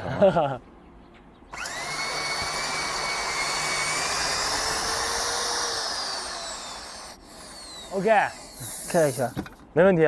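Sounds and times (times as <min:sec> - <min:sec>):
power tool motor whining: 0:01.5 - 0:09.6.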